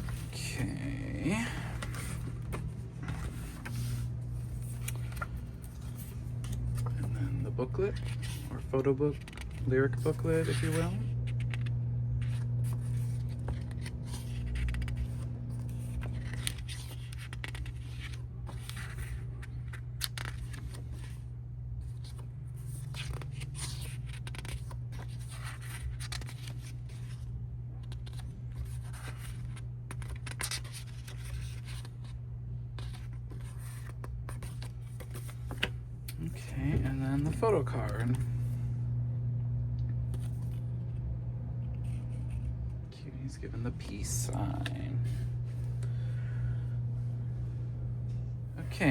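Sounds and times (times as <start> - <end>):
paper pages rustling: 0.0 - 0.6, 1.3 - 21.2, 21.8 - 27.2, 27.8 - 32.2, 32.8 - 38.3, 40.1 - 40.6
steady low hum: 0.0 - 48.9.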